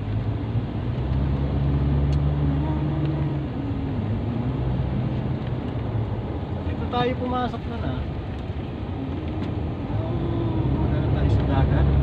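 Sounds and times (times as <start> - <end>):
vehicle engine humming: 0.0 - 12.0.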